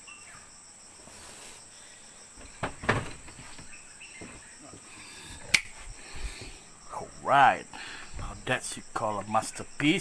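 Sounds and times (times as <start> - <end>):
crickets chirring: 0.0 - 10.0
sharp knocks: 2.4 - 3.8.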